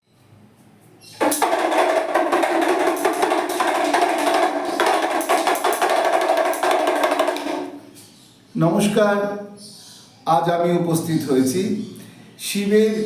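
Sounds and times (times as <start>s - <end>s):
hand drum rattling roll: 1.2s - 7.8s.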